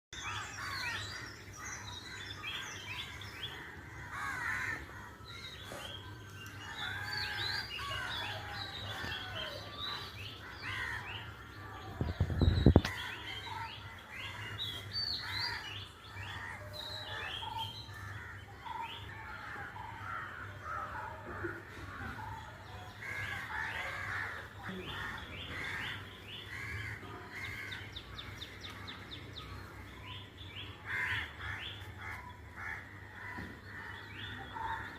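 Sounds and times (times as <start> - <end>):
small birds chirping: 0.1 - 21.0, 21.8 - 34.9.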